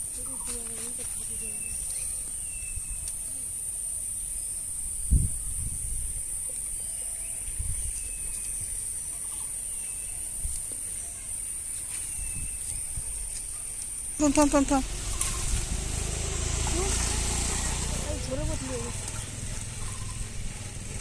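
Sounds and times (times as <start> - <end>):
insects chirring: 13.8 - 21.0.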